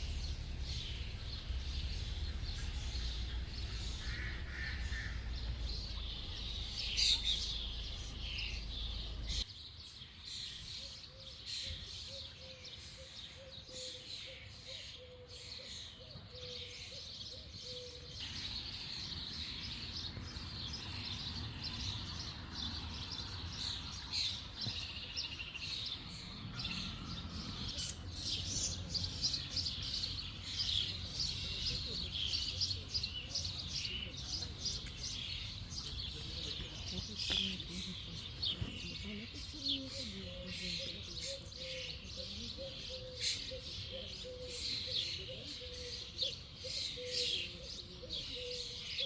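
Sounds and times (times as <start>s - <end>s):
low rumble: 0.0s - 9.3s
songbirds singing and chirping: 0.0s - 49.0s.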